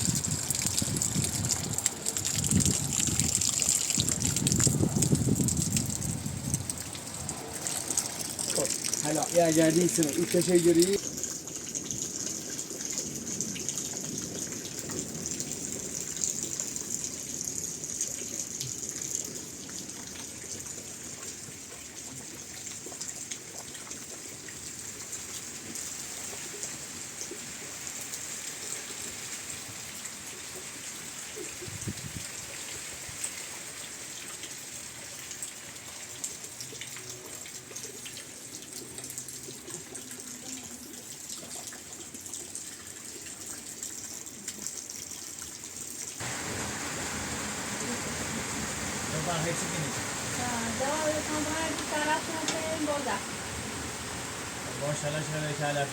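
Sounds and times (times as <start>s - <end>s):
heavy rain falling: 0.0s - 21.6s, 46.2s - 55.9s.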